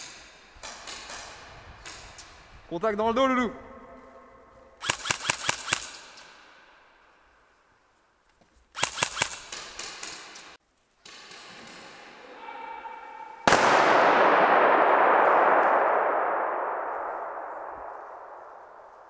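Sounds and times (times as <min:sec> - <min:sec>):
airsoft gun shots: 0:04.8 - 0:06.1, 0:08.8 - 0:09.9, 0:13.5 - 0:18.9.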